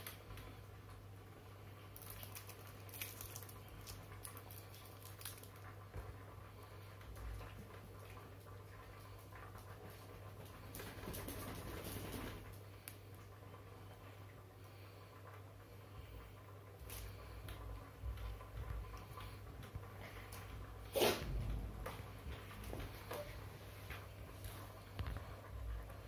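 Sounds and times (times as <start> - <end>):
steady low hum: 5.8 - 26.0.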